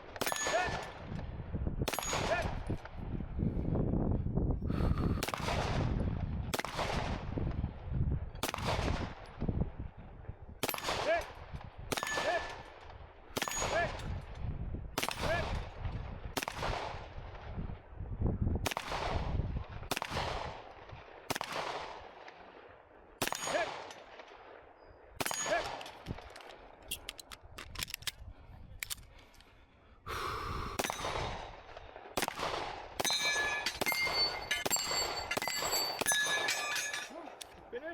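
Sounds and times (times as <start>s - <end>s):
pistol shots echoing: 0.0s - 1.1s, 1.9s - 2.6s, 6.5s - 7.2s, 8.4s - 9.2s, 10.6s - 14.0s, 15.0s - 15.6s, 18.7s - 19.2s, 19.9s - 22.5s, 23.2s - 26.7s, 30.8s - 37.5s
metallic ringing and clinking: 0.2s - 0.7s, 13.4s - 13.9s, 33.0s - 37.6s.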